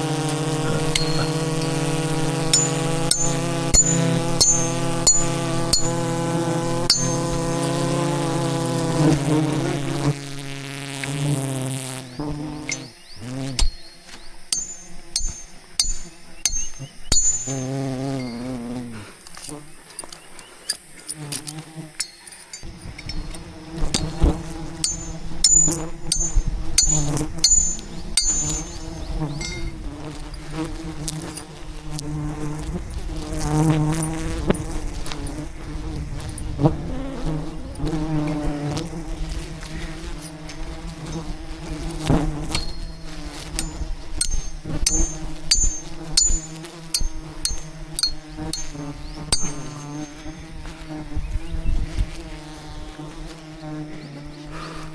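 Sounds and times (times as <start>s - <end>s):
bees buzzing: 0.0s - 54.9s
sharp knocks and clicks: 42.5s - 50.4s.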